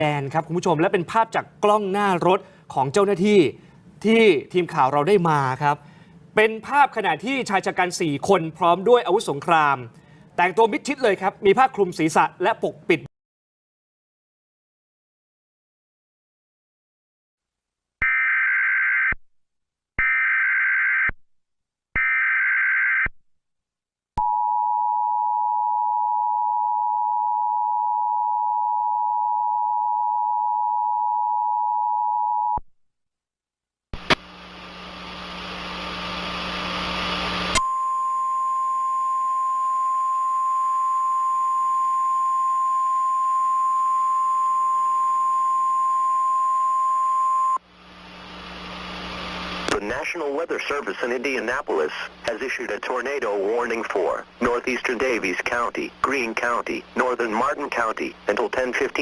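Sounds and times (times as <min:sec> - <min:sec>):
static hiss: 0:34.0 - 0:37.6, 0:47.7 - 0:49.7
steady warning tone: 0:36.8 - 0:47.6.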